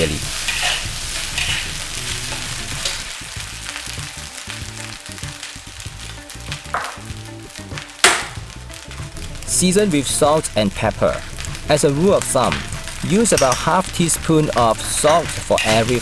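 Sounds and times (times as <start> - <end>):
rice sizzling in a wok: 0.0 - 16.0.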